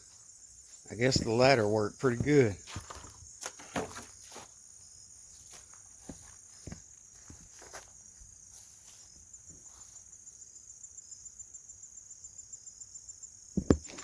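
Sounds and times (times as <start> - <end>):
faint rustling steps: 0.0 - 4.6, 5.3 - 10.0
insects chirping: 0.0 - 14.0.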